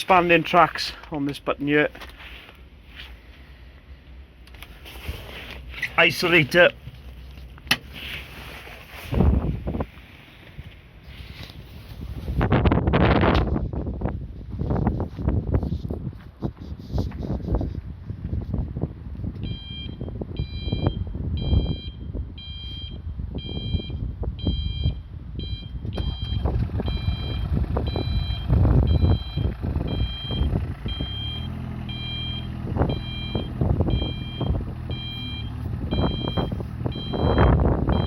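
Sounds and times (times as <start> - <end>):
warning alarm beeping: 19.4 - 38.0
diesel engine running: 25.9 - 38.0.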